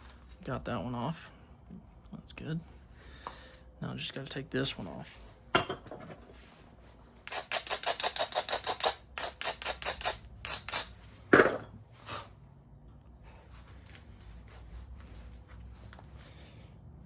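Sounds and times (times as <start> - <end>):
stone scraping strokes: 7.2 - 11.0.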